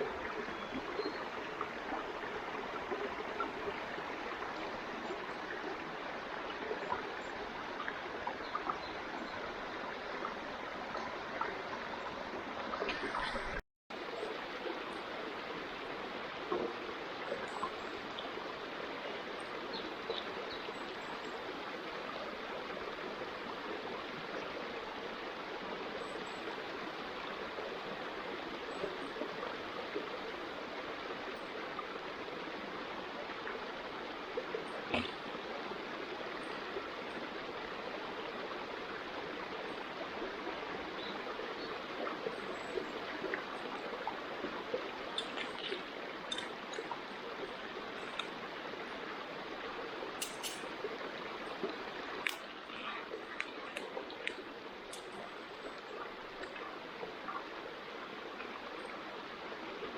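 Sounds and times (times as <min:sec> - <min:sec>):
stream flowing: 0:00.0 - 0:59.9
faint clicks: 0:45.1 - 0:47.0.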